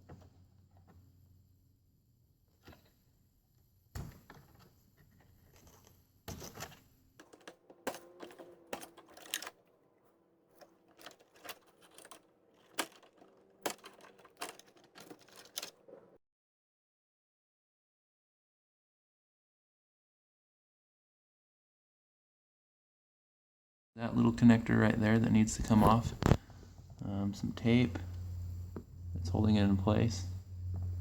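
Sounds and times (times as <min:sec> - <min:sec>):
hands handling plastic parts: 0:04.2 - 0:16.2.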